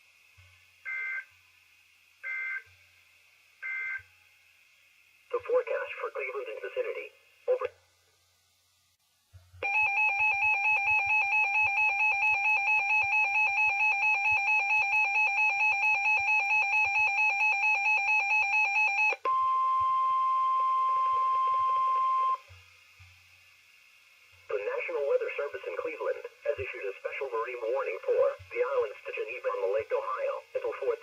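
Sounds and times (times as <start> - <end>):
steady pure alarm tone: 9.6 - 22.4.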